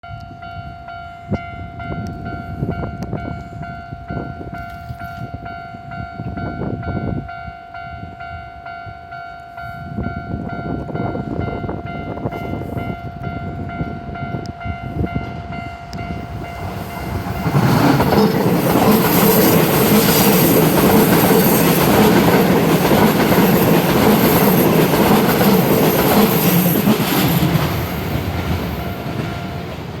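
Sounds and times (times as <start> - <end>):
train wheels passing: 9.6 - 30.0.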